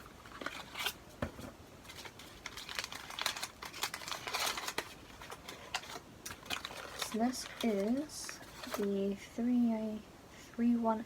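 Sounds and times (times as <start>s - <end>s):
wrapping crinkling: 0.0s - 1.0s, 1.8s - 9.1s.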